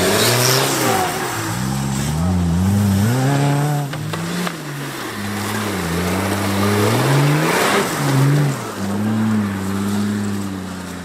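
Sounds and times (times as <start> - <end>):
off-road vehicle engine revving: 0.0 - 11.0.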